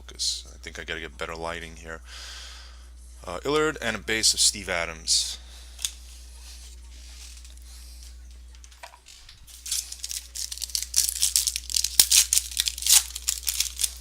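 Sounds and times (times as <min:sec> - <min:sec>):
plastic wrapper tearing and crinkling: 0:09.1 - 0:14.0.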